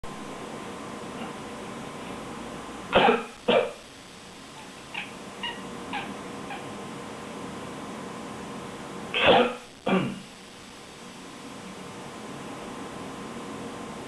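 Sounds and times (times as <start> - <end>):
person coughing: 2.9 - 3.8, 9.2 - 10.2
cat mewing: 4.6 - 6.7.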